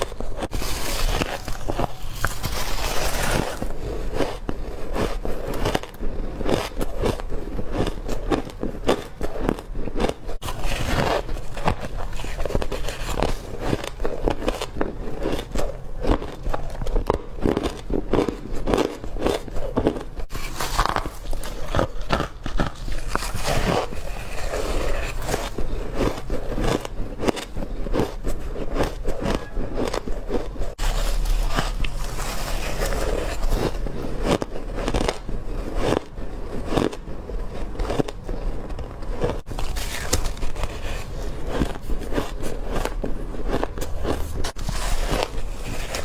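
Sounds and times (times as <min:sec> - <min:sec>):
person crunching ice: 0:00.0 - 0:46.0.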